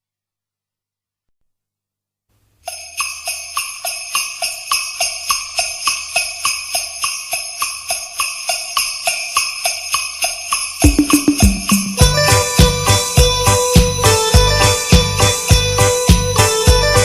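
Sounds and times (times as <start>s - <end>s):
sleigh-bell rhythm: 2.6s - 17.0s
electronic keyboard music: 10.8s - 17.0s.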